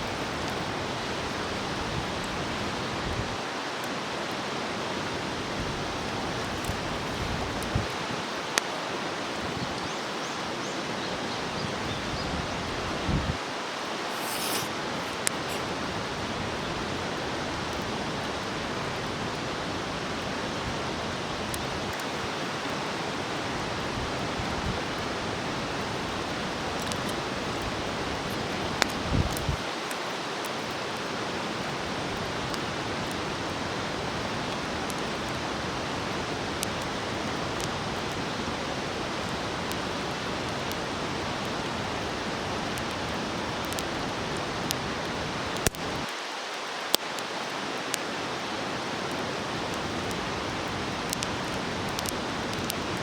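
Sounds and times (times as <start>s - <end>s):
food sizzling on hot plate: 13.9s - 15.8s
crackling pops: 14.0s - 15.8s, 25.7s - 30.0s, 45.6s - 46.2s.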